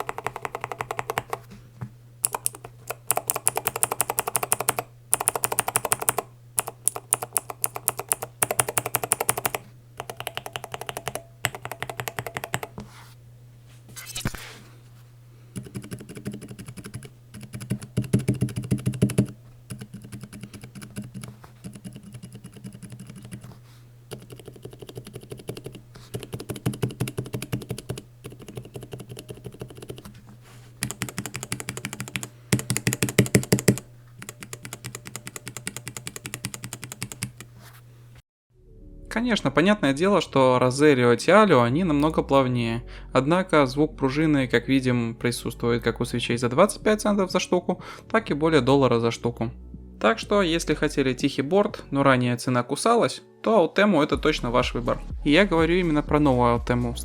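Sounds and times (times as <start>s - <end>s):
mechanical keyboard typing: 0.0s - 1.5s, 2.2s - 12.8s, 15.6s - 23.5s, 24.1s - 30.1s, 30.8s - 37.5s.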